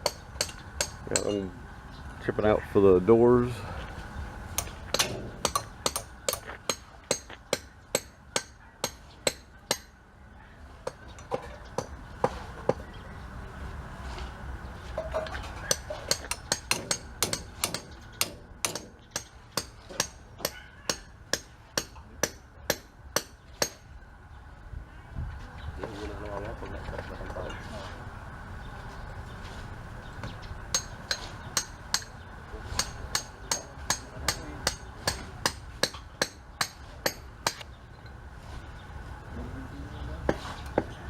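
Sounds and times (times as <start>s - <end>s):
hammer striking concrete block: 4.6s - 10.0s, 15.7s - 23.8s, 30.7s - 32.1s, 32.8s - 37.6s.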